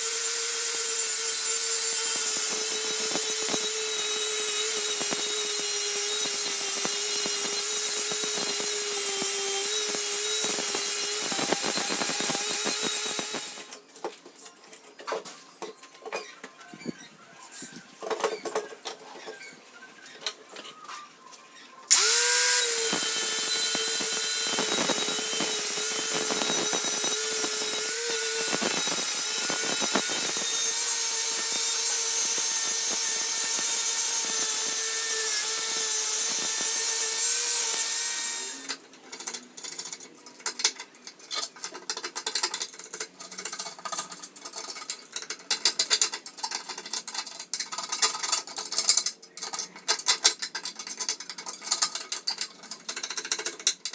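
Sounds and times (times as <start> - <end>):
electric power tool whining: 0.0 - 13.8, 21.9 - 38.8
clicks of handling metal parts: 38.6 - 53.9.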